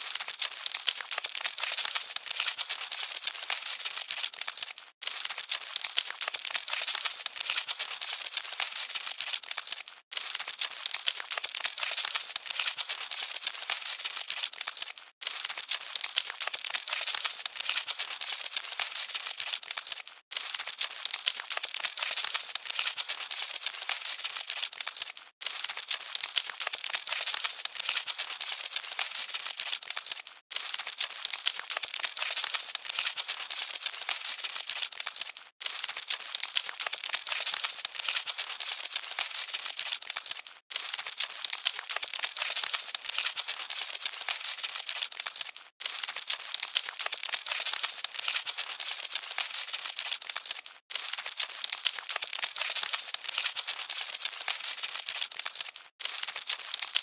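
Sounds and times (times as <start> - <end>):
cockroaches scuttling and crackling: 0.0 - 57.0.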